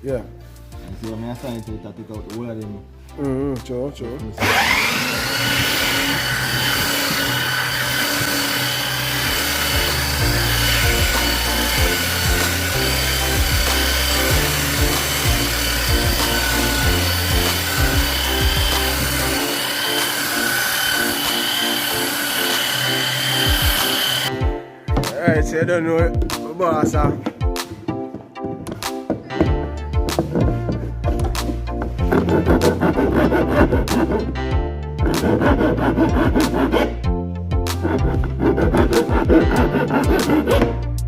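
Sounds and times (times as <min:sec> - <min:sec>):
background music with bass line: 0:00.0 - 0:20.2, 0:21.5 - 0:41.0
power tool whining on wood: 0:04.4 - 0:24.4.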